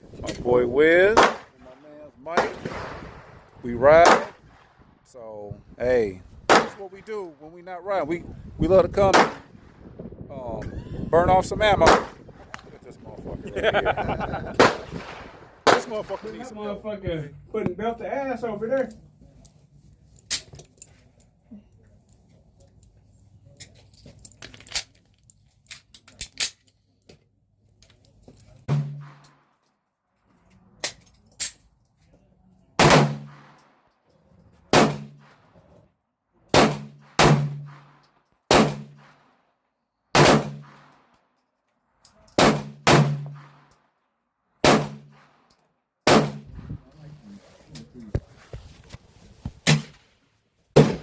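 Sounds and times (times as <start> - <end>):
gunshots: 1.0 - 4.9, 6.4 - 7.1, 9.0 - 9.6, 11.8 - 12.3, 14.5 - 16.5, 28.7 - 29.3, 32.8 - 33.6, 34.7 - 35.4, 36.5 - 39.2, 40.1 - 41.0, 42.4 - 43.7, 44.6 - 45.4, 46.0 - 46.6, 50.8 - 51.0.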